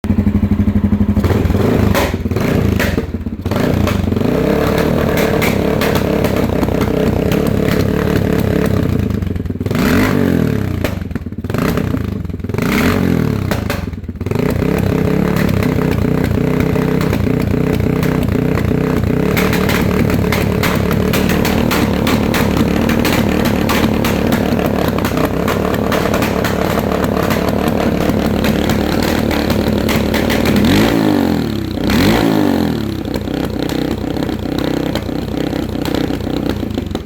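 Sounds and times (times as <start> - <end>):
motorcycle engine running poorly: 0.0 - 37.0.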